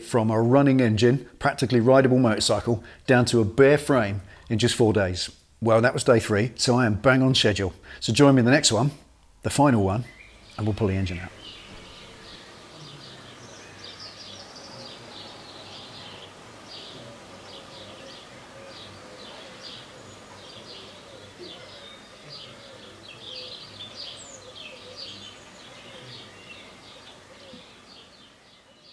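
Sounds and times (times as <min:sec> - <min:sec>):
birds chirping: 0:00.0 - 0:28.9
steady background hiss: 0:00.0 - 0:28.9.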